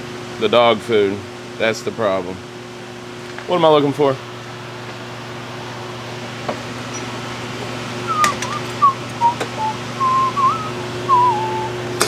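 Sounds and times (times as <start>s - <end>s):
steady background hum: 0.0s - 12.0s
man whistling a tune: 8.1s - 12.0s.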